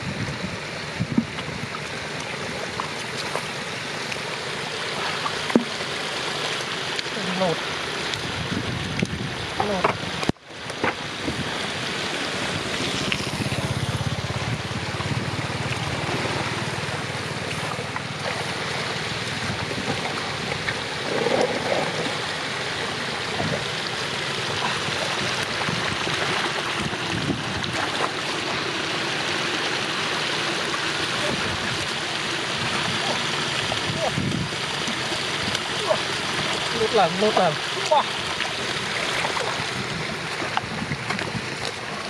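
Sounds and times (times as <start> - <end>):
floodwater rushing: 0.0 - 42.0
small knocks and splashes: 1.2 - 7.2, 30.7 - 42.0.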